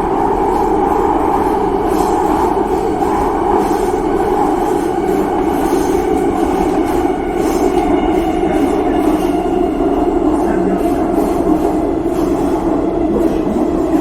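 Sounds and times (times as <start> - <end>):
subway train running: 0.0 - 14.0.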